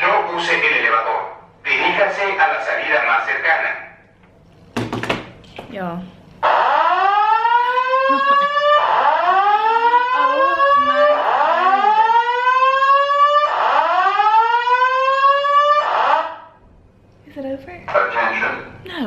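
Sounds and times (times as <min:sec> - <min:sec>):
fire alarm whoop: 0:06.4 - 0:16.5.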